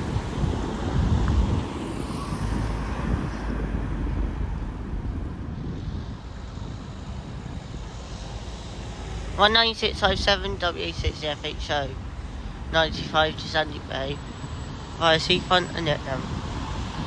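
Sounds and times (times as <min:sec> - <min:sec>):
vehicle passing close: 0:00.0 - 0:06.4
road traffic rumble: 0:00.0 - 0:17.0
wind on microphone: 0:00.0 - 0:17.0.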